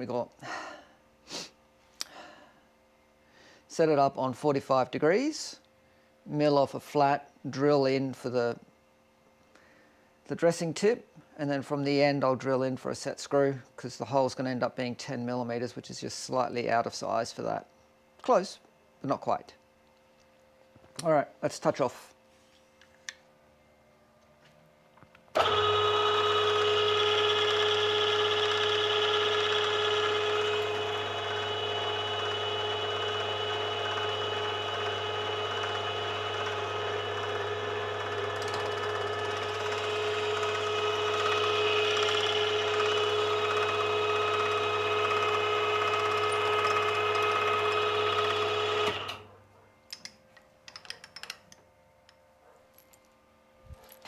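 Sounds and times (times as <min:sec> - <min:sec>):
grinding wheel whine: 0:25.3 - 0:49.3.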